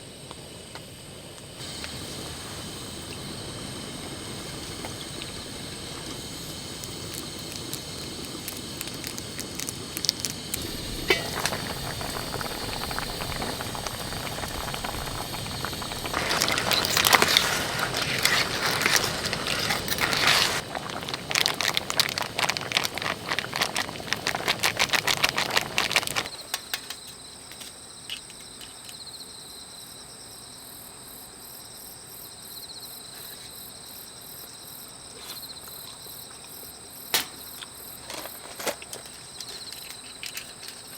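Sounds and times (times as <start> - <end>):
insect chirping trill: 0.0 - 40.9
dense crackling clicks: 1.4 - 27.1.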